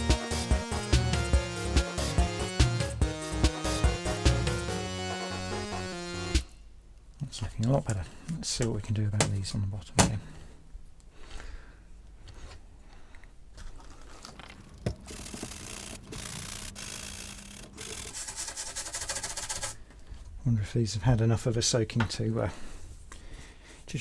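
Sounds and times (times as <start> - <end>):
upbeat video game music: 0.0 - 6.5
scrubbing on plastic case: 17.9 - 19.8.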